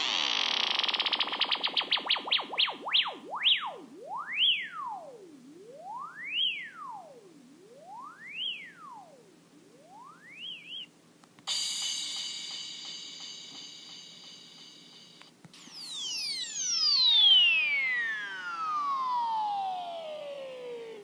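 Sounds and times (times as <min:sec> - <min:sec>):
electronic tone sweeping in pitch: 0:00.0 - 0:10.9, 0:15.6 - 0:21.0.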